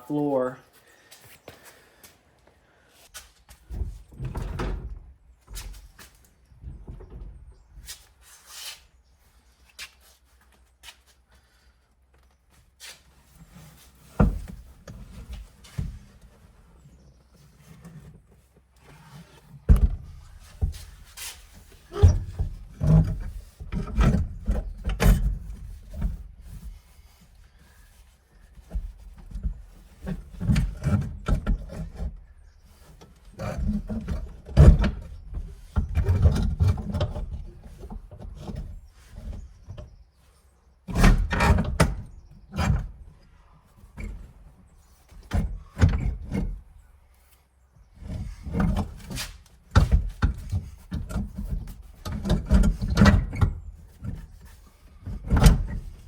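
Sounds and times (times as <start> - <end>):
metal clunks and thuds: 3.7 - 5.6, 19.7 - 21.0, 21.8 - 26.2
sliding scrapes of seat tracks: 48.2 - 49.4.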